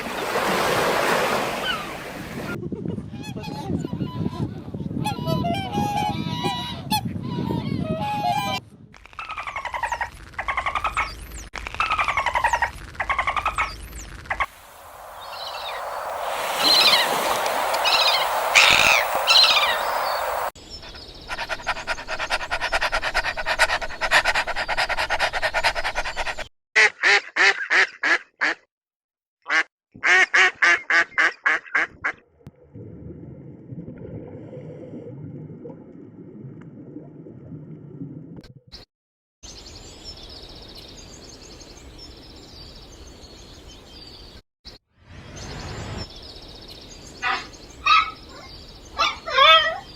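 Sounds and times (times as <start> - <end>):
animal calls: 15.3 - 26.2
duck quacking: 26.8 - 28.6, 29.5 - 32.2.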